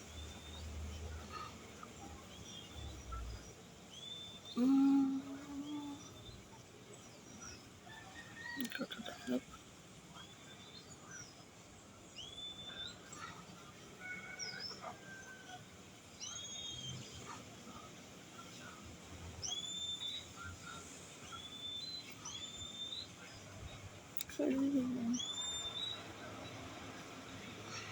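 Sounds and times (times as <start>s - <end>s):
small birds whistling: 19.4s - 23.2s, 24.8s - 26.0s
bird chirps: 24.8s - 26.0s.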